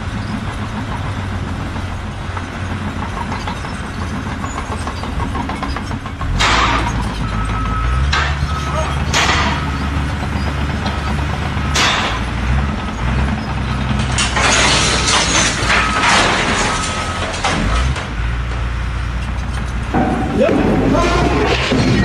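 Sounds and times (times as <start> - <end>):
heavy machine engine running: 0.0 - 22.0.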